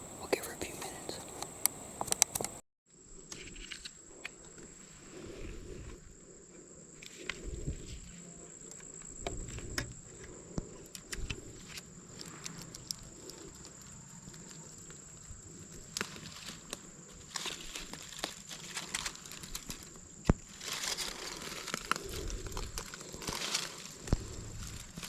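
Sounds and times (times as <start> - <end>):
light clicks: 1.2 - 2.6
low rustles: 9.4 - 25.0.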